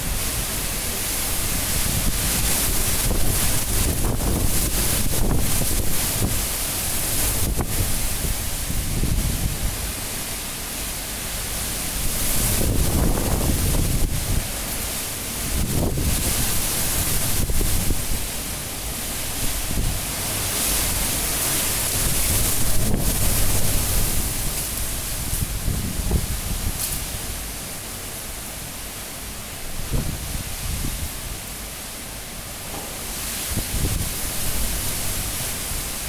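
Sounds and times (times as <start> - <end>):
strong wind gusting: 0.0 - 10.1, 12.0 - 14.7, 15.4 - 18.3, 19.3 - 27.4, 29.7 - 31.4, 32.9 - 36.0.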